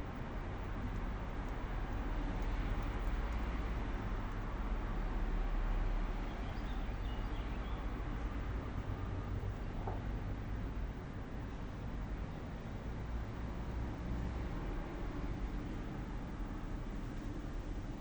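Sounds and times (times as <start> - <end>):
low city rumble: 0.0 - 18.0.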